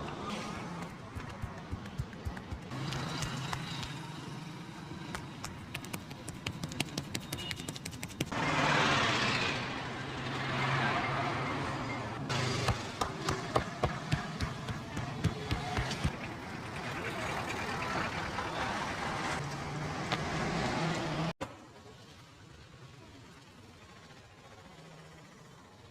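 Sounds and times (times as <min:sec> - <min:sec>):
low traffic hum: 0:00.0 - 0:25.9
hands slapping a head: 0:00.8 - 0:04.0, 0:05.1 - 0:08.4.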